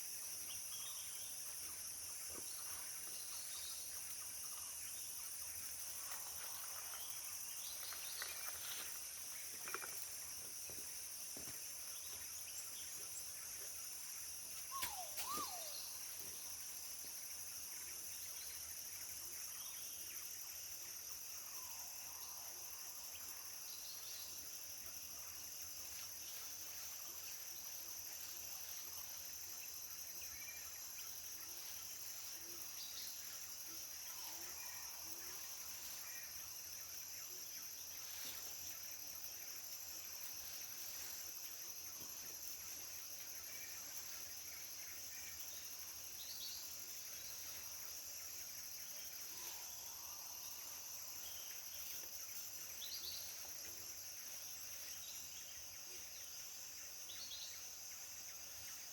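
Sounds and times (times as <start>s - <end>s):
faint bird calls: 14.6s - 16.4s
high-pitched insect drone: 14.6s - 17.9s.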